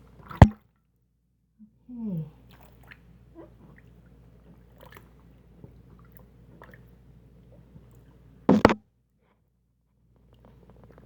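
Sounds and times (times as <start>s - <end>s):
wet cloth plunging drain: 0.2s - 0.6s.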